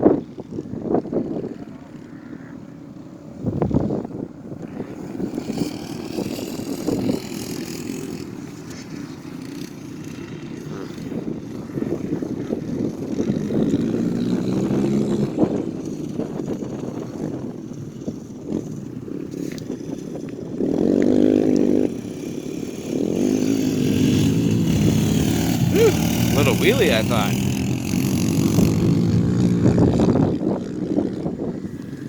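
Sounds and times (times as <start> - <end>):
dirt bike engine revving: 13.2 - 15.6, 20.7 - 30.2.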